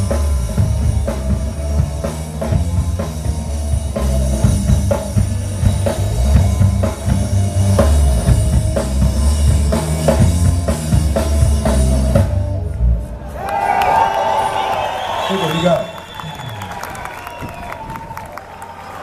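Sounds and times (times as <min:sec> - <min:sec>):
bass drum beat: 0:00.0 - 0:12.7
rock band playing: 0:00.0 - 0:17.8.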